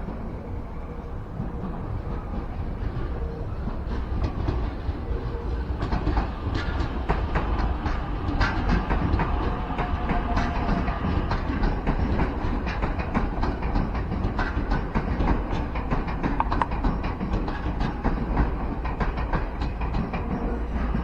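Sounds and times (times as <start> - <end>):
train rumbling past: 0.0 - 21.0.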